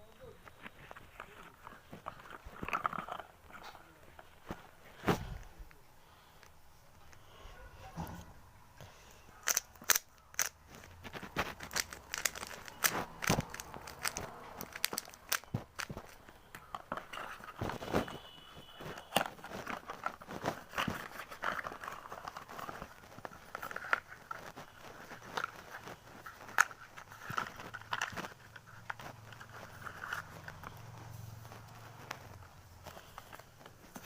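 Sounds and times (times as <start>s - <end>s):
plastic and cardboard crinkling: 0.0s - 8.1s, 8.8s - 34.0s
sharp clicks and snaps: 9.4s - 16.6s.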